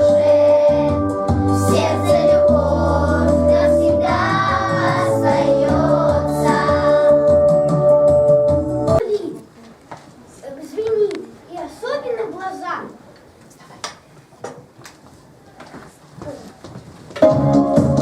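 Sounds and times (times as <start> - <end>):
person singing: 0.0 - 7.4
backing track with bass line: 0.0 - 9.0.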